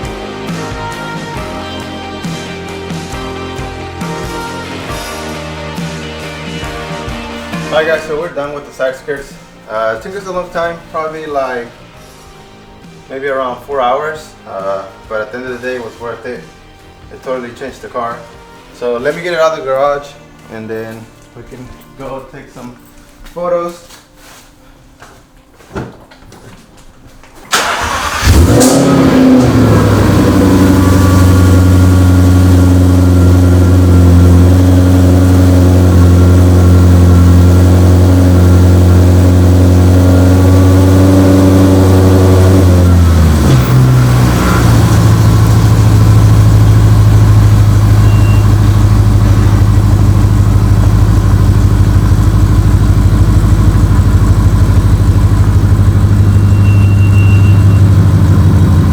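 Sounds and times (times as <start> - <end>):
car engine starting and idling: 27.5 - 58.9.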